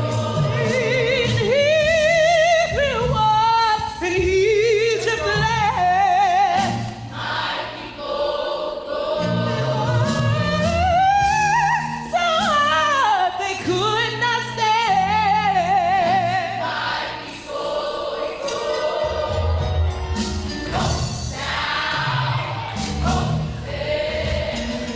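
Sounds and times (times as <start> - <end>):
voices singing a hymn: 0.0 - 2.8, 4.9 - 11.3, 15.5 - 24.9
held bass accompaniment: 18.5 - 24.9.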